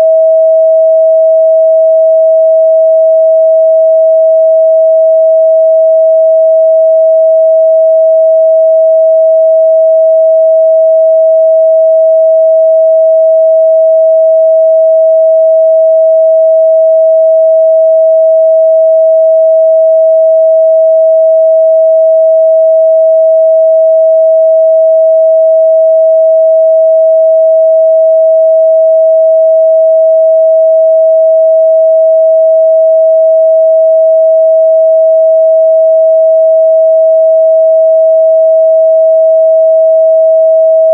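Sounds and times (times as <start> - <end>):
sine wave test tone: 0.0 - 40.9.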